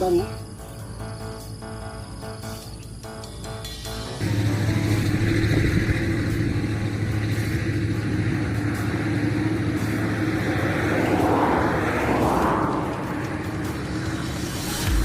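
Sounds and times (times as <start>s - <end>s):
road traffic passing: 0.0s - 15.0s
vehicle passing close by: 4.2s - 15.0s.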